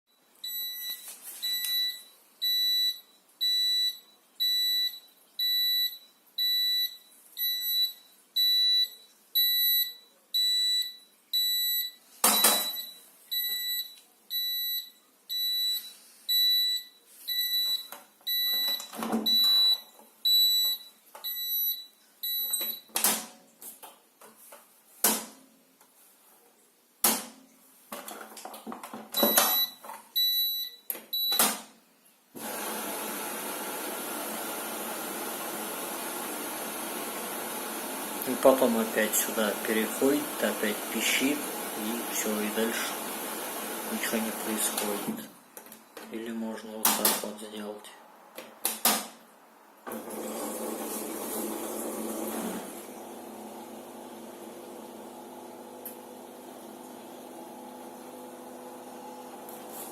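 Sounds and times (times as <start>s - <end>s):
washing machine high beeps: 0.1s - 22.9s, 29.2s - 31.4s, 38.2s - 45.1s.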